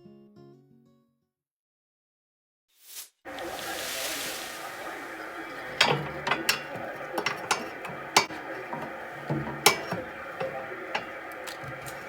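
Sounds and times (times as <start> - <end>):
steady low hum: 3.3 - 12.0
metallic clicks and knocks: 5.8 - 12.0.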